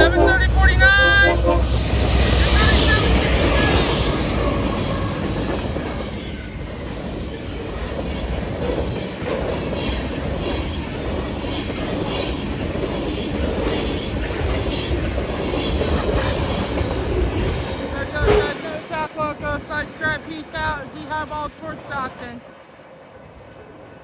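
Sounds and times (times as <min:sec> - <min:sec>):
freight train rumble: 0:00.0 - 0:24.0
wheels clicking over rail joints: 0:04.3 - 0:19.5.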